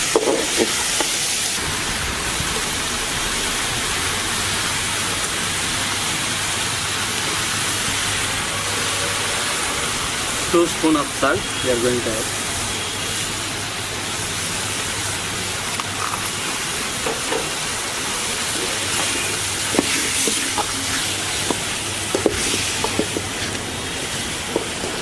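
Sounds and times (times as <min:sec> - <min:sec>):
chicken sizzling in oil: 0:00.0 - 0:25.0
spoon tapping pan: 0:21.4 - 0:23.4.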